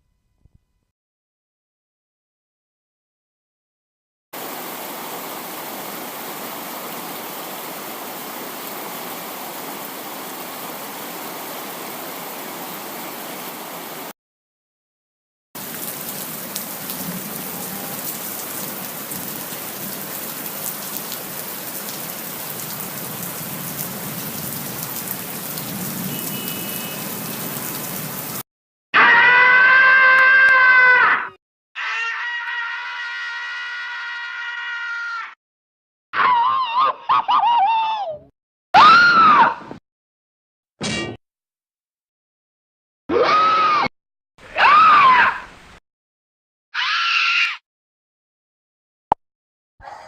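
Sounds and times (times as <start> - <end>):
fine crackly rain patter: 4.4 - 14.1, 15.6 - 28.4
steady rain falling: 4.4 - 14.1, 15.6 - 28.4.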